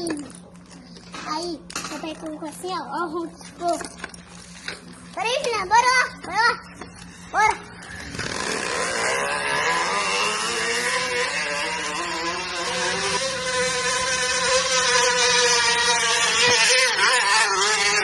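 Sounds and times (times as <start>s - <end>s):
bottle buzzing against wheel spokes: 6.6s - 18.0s.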